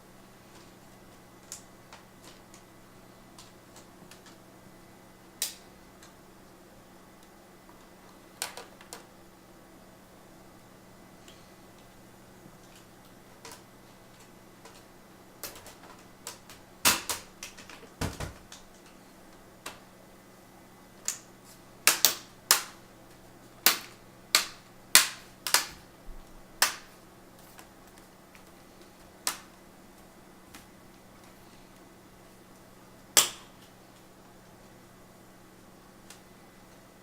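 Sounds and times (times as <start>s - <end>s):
plastic clips snapping: 15.4s - 19.0s, 21.0s - 22.8s, 23.6s - 25.8s, 26.6s - 27.0s, 29.2s - 29.5s.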